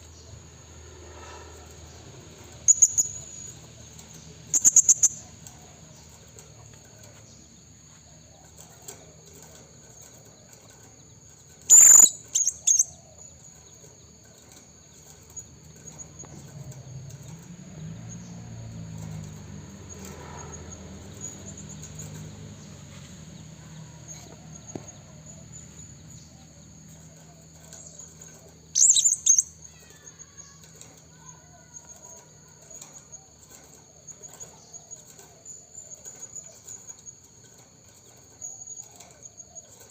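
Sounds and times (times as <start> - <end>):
high insect drone: 0.0 - 39.9
parrot shrill high calls: 11.7 - 12.8, 28.8 - 29.5.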